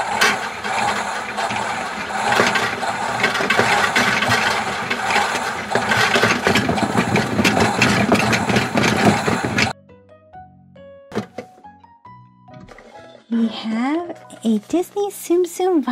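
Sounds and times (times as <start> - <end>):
toy washing machine whirring: 0.0 - 9.8.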